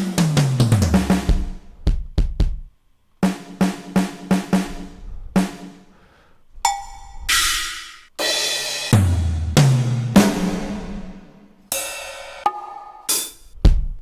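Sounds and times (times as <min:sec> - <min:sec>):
sampled drum hits: 0:00.0 - 0:06.0, 0:06.7 - 0:14.0
ringing metallic hit: 0:06.7 - 0:08.0
bright cymbal crash: 0:06.7 - 0:13.5.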